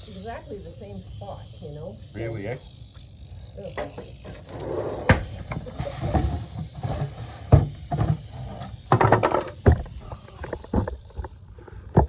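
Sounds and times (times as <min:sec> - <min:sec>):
knocks and clatters of handling: 0:05.1 - 0:12.0.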